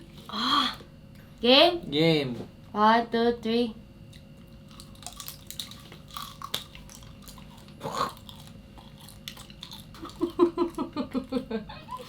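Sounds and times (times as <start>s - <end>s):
people chewing crunchy snack: 4.1s - 12.0s
people giggling: 10.1s - 12.0s.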